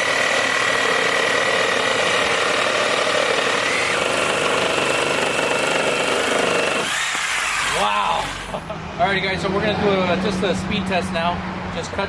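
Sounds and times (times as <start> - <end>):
reciprocating saws cutting wood: 0.0 - 8.7.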